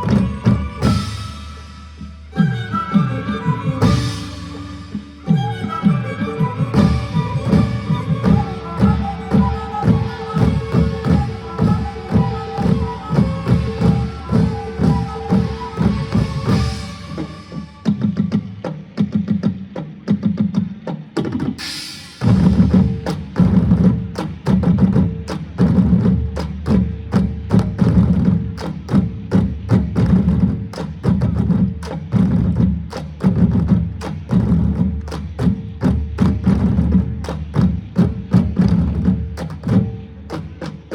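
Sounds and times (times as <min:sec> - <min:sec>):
deep booming drum tones: 0:06.8 - 0:18.6, 0:22.2 - 0:40.9
sharp cracking drum strokes: 0:06.8 - 0:18.6.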